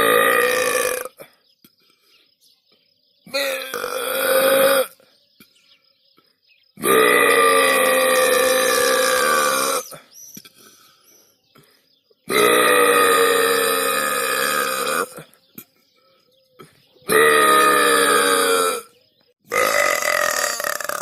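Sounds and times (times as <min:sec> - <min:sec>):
long loud burps: 0:00.0 - 0:01.4, 0:03.3 - 0:05.0, 0:06.8 - 0:10.0, 0:12.3 - 0:15.3, 0:17.1 - 0:18.9, 0:19.5 - 0:21.0.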